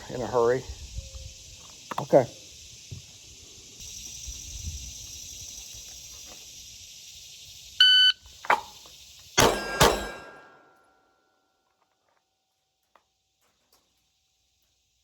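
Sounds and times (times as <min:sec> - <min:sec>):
shot timer beep: 0:07.8 - 0:08.2
handgun firing: 0:09.4 - 0:10.6.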